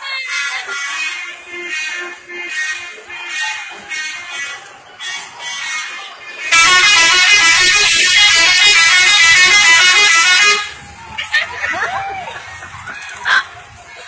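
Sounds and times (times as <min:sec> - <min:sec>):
tuned air horns playing a tune: 0:00.0 - 0:12.8.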